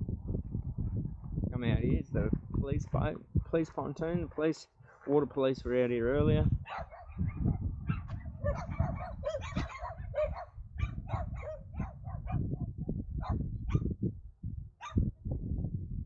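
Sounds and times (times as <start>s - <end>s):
dog barking and yipping: 6.6s - 12.5s, 13.2s - 13.9s, 14.8s - 15.0s.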